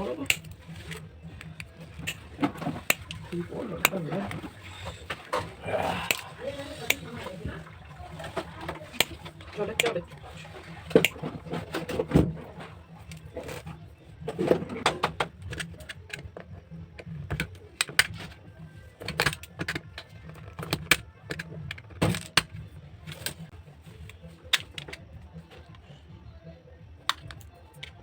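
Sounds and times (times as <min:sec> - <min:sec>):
small objects clicking and knocking: 0:00.1 - 0:07.1.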